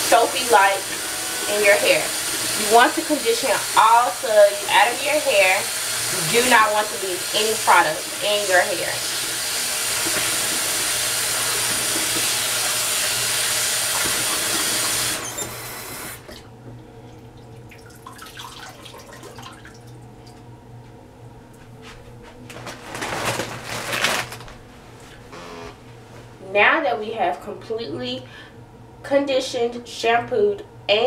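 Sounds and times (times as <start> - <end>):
tap water running into sink: 0.0 - 16.4, 17.3 - 20.4.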